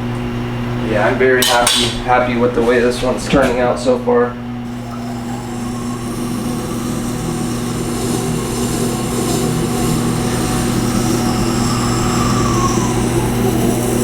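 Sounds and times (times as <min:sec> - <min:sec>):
grinder motor humming: 0:04.6 - 0:14.0
steel scraping on grinding stone: 0:04.7 - 0:14.0.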